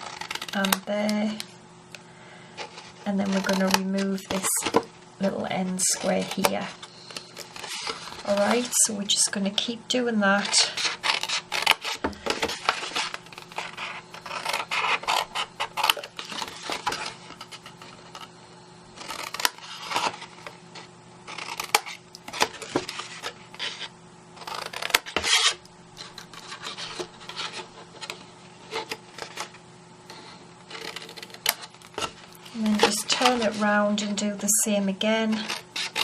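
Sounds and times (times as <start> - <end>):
scissors snipping cardstock: 0.0 - 1.4, 2.7 - 4.9, 5.6 - 8.8, 10.4 - 18.3, 30.7 - 33.7
card rustling: 2.6 - 9.3, 24.5 - 33.8.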